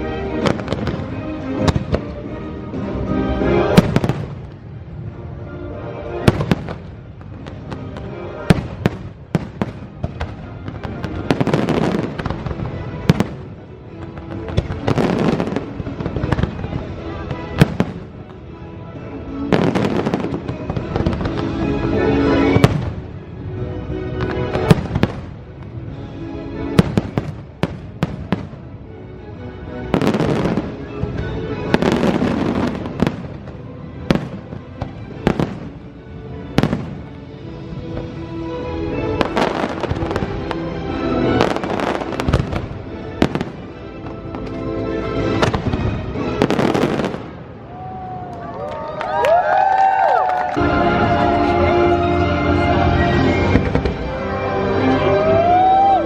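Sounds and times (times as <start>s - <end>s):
loud music: 0.0s - 47.6s, 50.6s - 56.0s
fireworks bangs and crackling: 0.2s - 2.8s, 3.6s - 5.0s, 6.2s - 18.5s, 19.4s - 23.4s, 24.1s - 26.0s, 26.7s - 28.8s, 29.9s - 38.2s, 38.9s - 48.2s, 52.6s - 54.4s.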